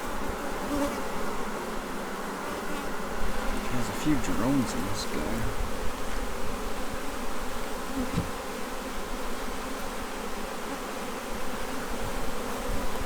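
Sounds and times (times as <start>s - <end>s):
honey bees buzzing: 0.0s - 12.6s.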